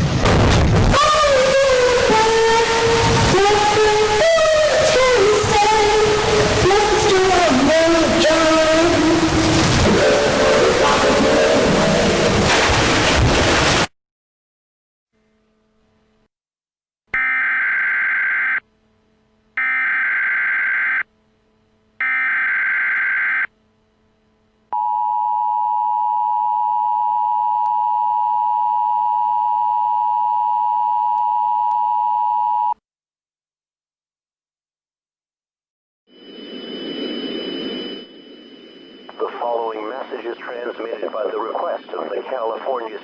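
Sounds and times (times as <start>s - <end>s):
screeching data bursts: 17.2s - 18.6s, 19.6s - 21.1s, 22.0s - 23.5s
two-tone alert signal: 17.2s - 18.6s, 19.6s - 21.0s, 22.0s - 23.5s.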